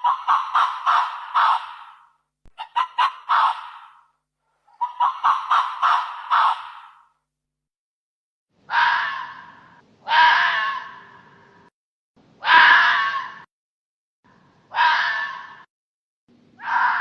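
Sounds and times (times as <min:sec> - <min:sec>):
fox raspy calls: 0:00.0 - 0:04.1, 0:04.7 - 0:07.1, 0:08.7 - 0:11.6, 0:12.4 - 0:13.5, 0:14.7 - 0:15.7, 0:16.6 - 0:17.0.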